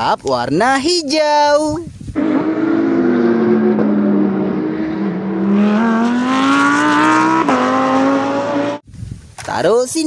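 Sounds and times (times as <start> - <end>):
racing car engine revving: 2.2 - 8.8.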